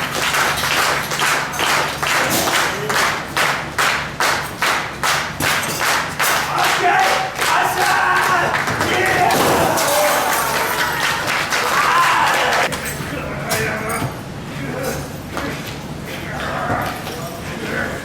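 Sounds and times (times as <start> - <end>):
crowd clapping in unison: 0.0 - 9.3, 10.0 - 12.7.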